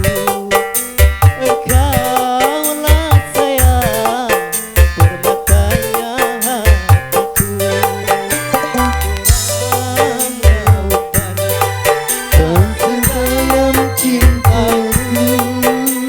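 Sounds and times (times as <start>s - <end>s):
keyboard melody bending in pitch: 0.0s - 16.0s
low drum thumps: 1.0s - 2.2s, 4.8s - 6.0s, 6.7s - 15.8s.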